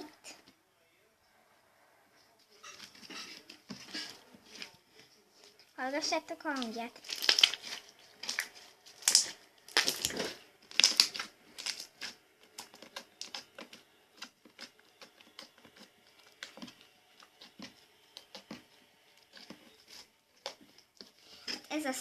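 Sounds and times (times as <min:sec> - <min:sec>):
slime crackling and popping: 0:05.9 - 0:21.8.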